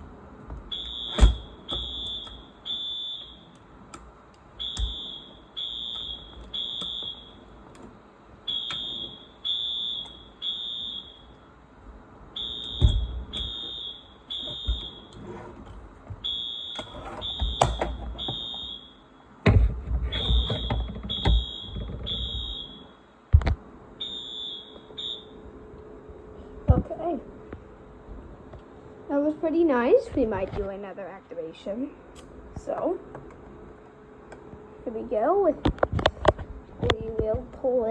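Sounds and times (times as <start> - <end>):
fire alarm horn beeping: 0.7 - 3.7, 4.6 - 7.7, 8.4 - 11.5, 12.3 - 15.4, 16.2 - 19.4, 20.1 - 23.2, 24.0 - 25.4
knocks and thumps: 19.4 - 22.5.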